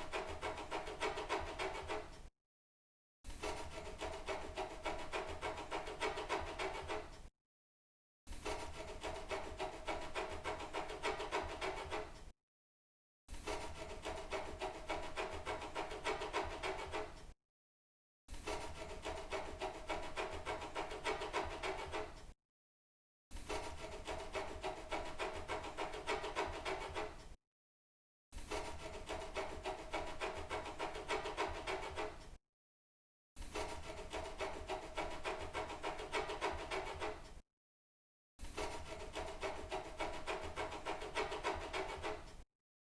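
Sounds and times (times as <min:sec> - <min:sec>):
fast scratching strokes: 0:00.0 - 0:02.3, 0:03.3 - 0:07.3, 0:08.3 - 0:12.3, 0:13.3 - 0:17.3, 0:18.3 - 0:22.3, 0:23.3 - 0:27.4, 0:28.4 - 0:32.4, 0:33.4 - 0:37.4, 0:38.4 - 0:42.4.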